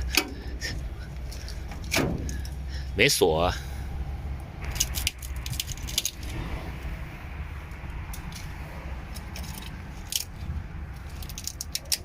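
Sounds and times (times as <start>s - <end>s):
steady low rumble: 0.0s - 12.0s
metallic clicks of hand tools: 11.2s - 12.0s.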